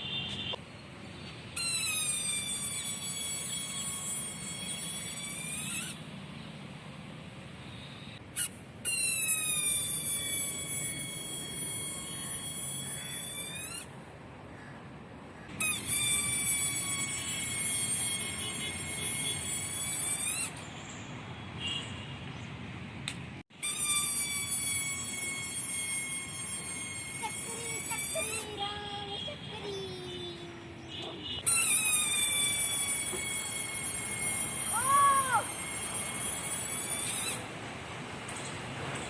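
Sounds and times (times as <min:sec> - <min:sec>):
balloon toy high whistle: 0:01.6 - 0:06.0, 0:08.4 - 0:13.9, 0:15.6 - 0:20.6, 0:23.5 - 0:30.4, 0:31.4 - 0:37.5.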